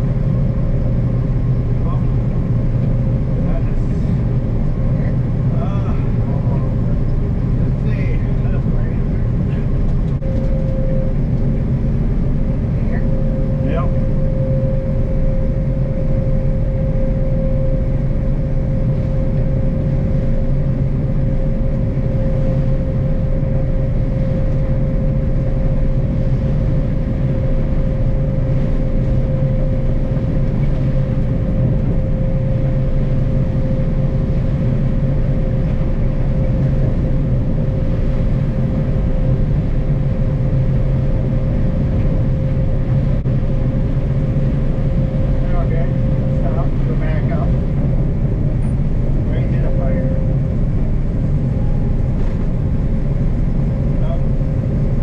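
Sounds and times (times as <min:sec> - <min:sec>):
combine harvester drone: 0:00.0 - 0:55.0
constant machine whine: 0:00.0 - 0:55.0.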